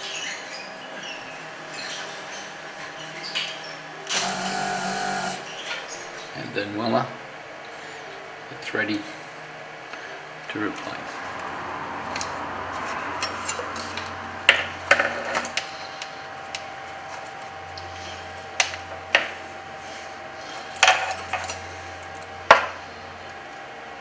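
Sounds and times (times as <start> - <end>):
metal tools clinking on workbench: 12.1 - 16.1, 20.6 - 22.7.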